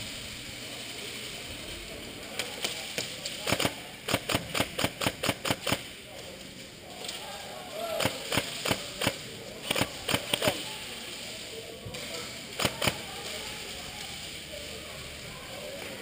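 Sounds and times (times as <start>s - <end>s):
airsoft gun shots: 8.0s - 10.6s.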